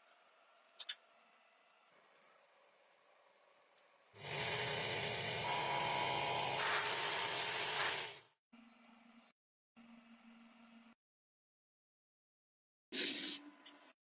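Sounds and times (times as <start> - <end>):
loud spraying hiss: 4.2 - 8.2.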